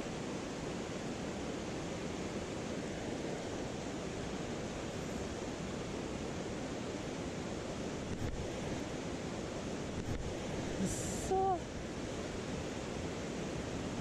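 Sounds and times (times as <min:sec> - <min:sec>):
stream rushing over rocks: 0:00.0 - 0:14.0.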